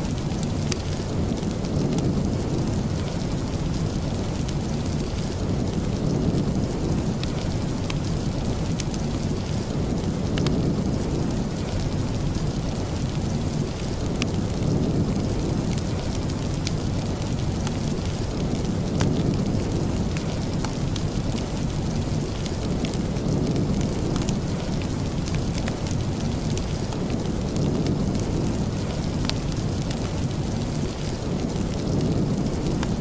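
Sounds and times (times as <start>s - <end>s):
heavy rain: 0.0s - 33.0s.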